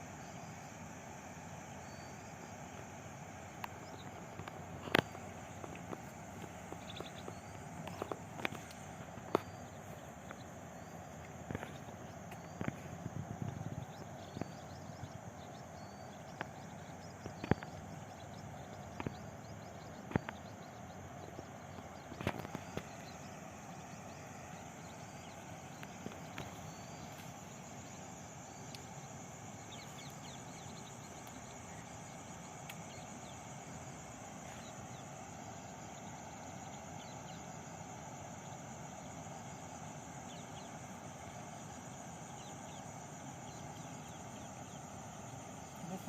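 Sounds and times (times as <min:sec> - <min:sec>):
birds chirping: 0:00.0 - 0:46.0
outdoor background noise: 0:00.0 - 0:46.0.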